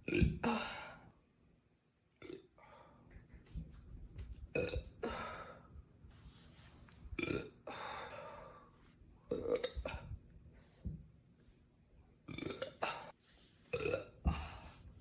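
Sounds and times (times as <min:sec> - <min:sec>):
woman burping: 0:00.0 - 0:00.8, 0:09.3 - 0:10.2, 0:12.3 - 0:13.1, 0:13.7 - 0:14.3.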